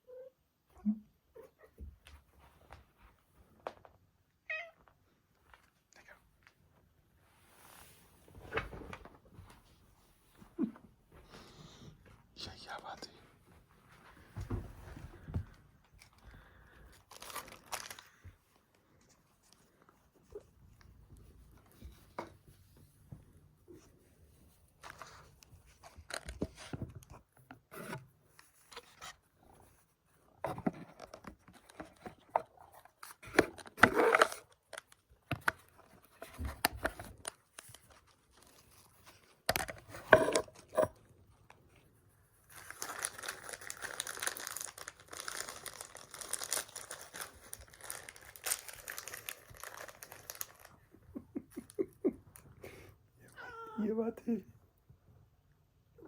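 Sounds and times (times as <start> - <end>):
packaging torn and crinkled: 17.0 - 18.2, 42.5 - 50.8.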